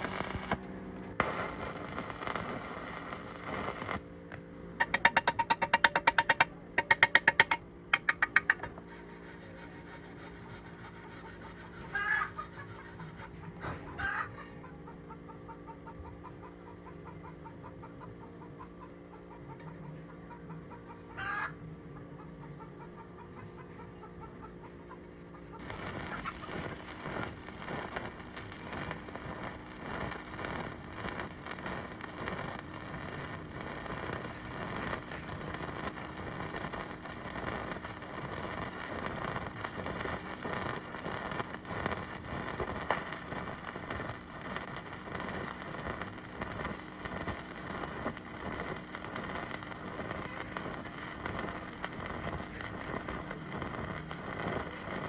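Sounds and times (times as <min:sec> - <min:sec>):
welding arc crackling: 0:00.0 - 0:04.1, 0:04.8 - 0:13.3, 0:25.6 - 0:55.0.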